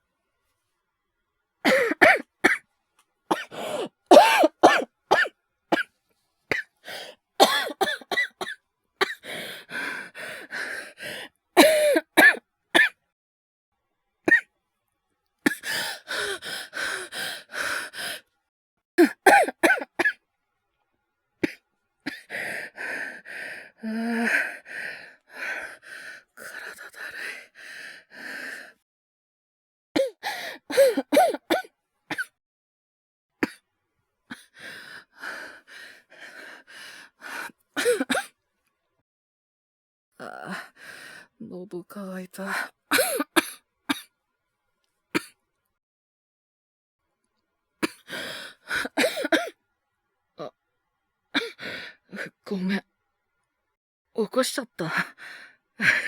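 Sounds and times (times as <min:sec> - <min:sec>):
man coughing: 0:01.7 - 0:02.6, 0:03.3 - 0:05.3, 0:07.4 - 0:09.2, 0:11.6 - 0:12.9.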